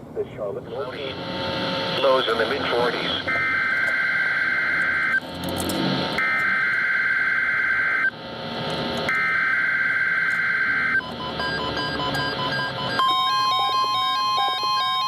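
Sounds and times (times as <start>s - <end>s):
electronic alert beeps: 10.3s - 15.0s.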